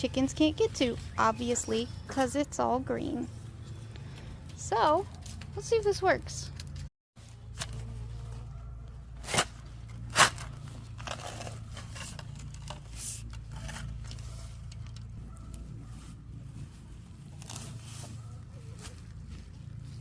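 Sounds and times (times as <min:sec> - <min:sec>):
rustling and scraping: 0:06.5 - 0:20.0
weed tearing from soil: 0:17.2 - 0:18.0.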